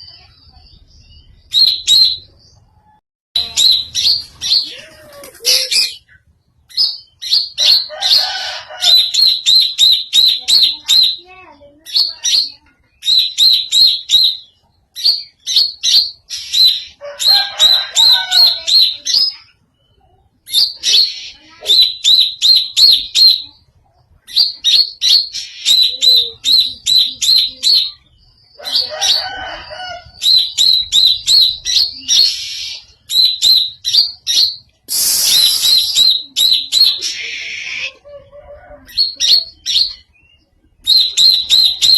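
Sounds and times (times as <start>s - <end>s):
harsh rasping bird call: 28.6s - 38.3s
bird lower warbling: 30.1s - 40.1s.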